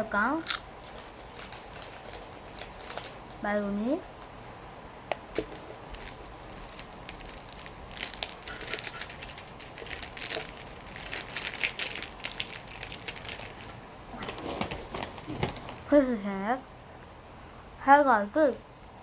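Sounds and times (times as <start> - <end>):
crackers being crushed: 0.4 - 3.2, 5.1 - 15.8.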